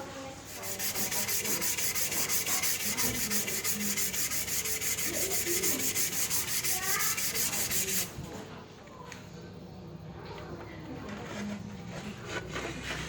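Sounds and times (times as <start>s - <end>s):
hand sanding strokes: 0.5s - 8.2s.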